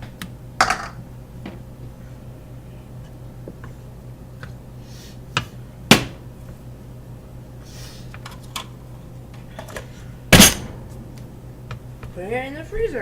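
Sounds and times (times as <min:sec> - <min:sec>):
steady low hum: 0:00.0 - 0:13.0
loud thump: 0:10.4 - 0:11.8.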